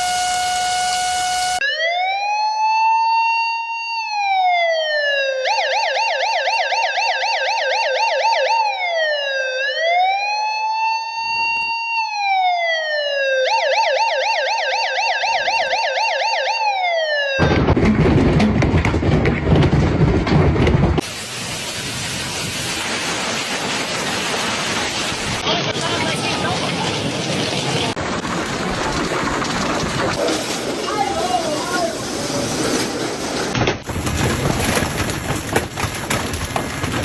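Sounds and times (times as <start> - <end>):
emergency vehicle siren wail and yelp: 0.0 - 17.6.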